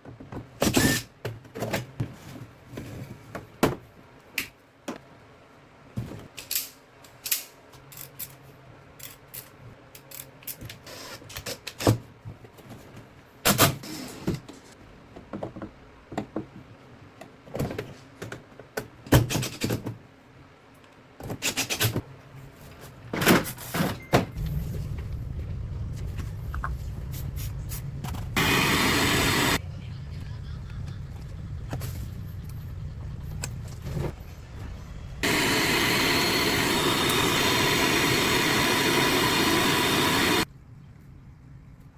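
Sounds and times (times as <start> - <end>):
steady low hum: 24.3 - 40.5.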